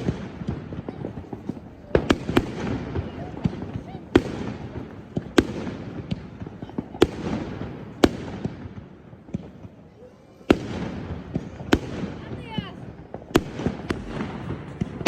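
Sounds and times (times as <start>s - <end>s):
firework bangs: 0.0s - 15.0s
crackle and rumble of explosions: 10.5s - 15.0s.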